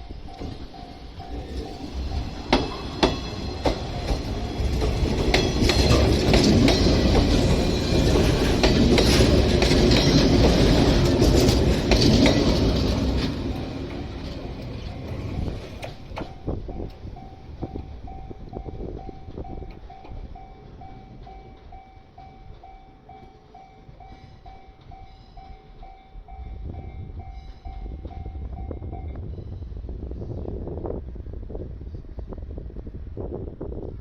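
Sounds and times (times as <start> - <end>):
train wheel clacks over rail joints: 0.0 - 17.3
level crossing warning bell: 0.0 - 29.2
train rumbling by: 0.0 - 34.0.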